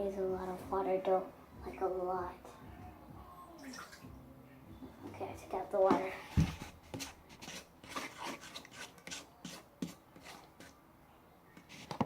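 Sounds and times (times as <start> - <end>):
utensil scraping slime: 6.0 - 10.8, 11.6 - 12.0.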